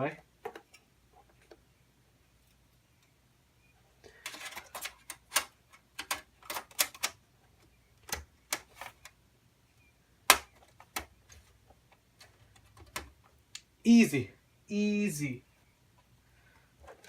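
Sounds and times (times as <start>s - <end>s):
clicks and knocks of computer parts: 0.4s - 0.8s, 4.1s - 7.2s, 8.0s - 9.2s, 10.2s - 13.4s.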